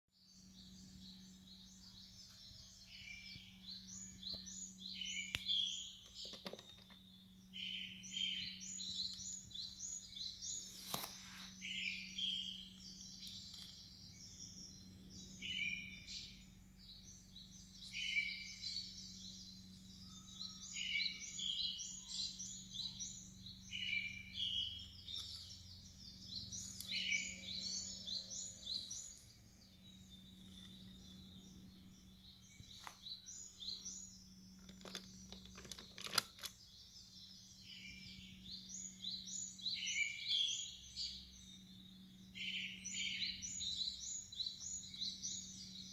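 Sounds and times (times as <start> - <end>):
songbirds singing: 0.1 - 45.9
steady low hum: 0.3 - 6.3, 6.9 - 45.9
sharp clicks: 34.6 - 36.6.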